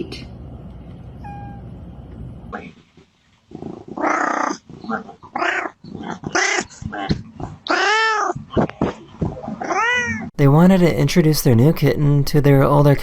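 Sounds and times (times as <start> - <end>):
cat yowling and meowing: 7.7 - 8.4, 9.6 - 10.3.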